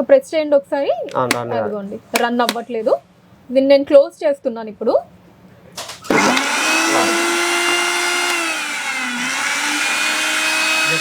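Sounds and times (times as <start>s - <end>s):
mixer motor whining: 6.0s - 11.0s.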